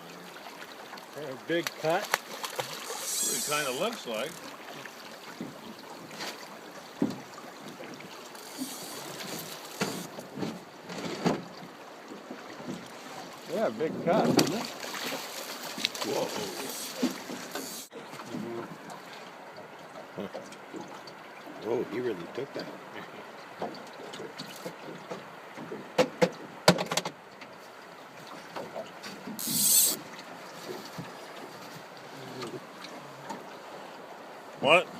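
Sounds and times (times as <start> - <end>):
river water rushing: 0.0 - 10.8, 14.4 - 18.2
line buzzing off reel drag: 2.7 - 4.5, 8.3 - 10.1, 16.5 - 17.9, 29.4 - 30.0
fishing reel clicks: 29.4 - 30.0.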